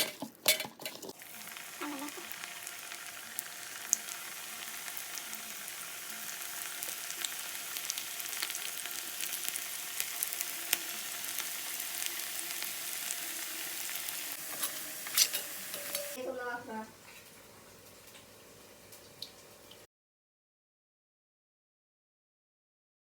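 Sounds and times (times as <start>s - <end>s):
deep-frying sizzle with crackles: 0.0s - 19.9s.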